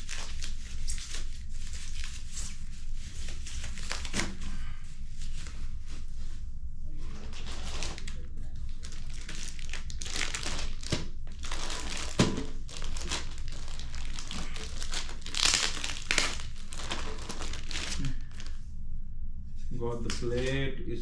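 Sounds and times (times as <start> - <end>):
plastic packaging crumpling: 0.0 - 2.5, 7.2 - 18.6.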